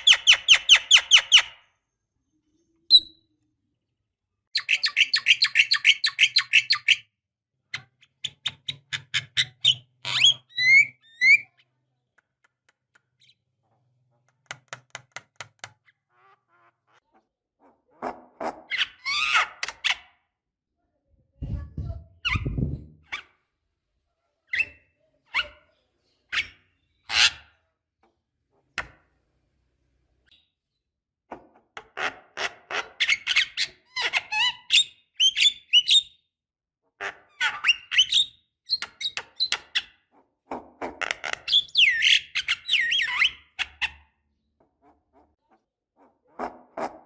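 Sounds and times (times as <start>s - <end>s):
bird calling and chattering: 4.6s - 7.1s.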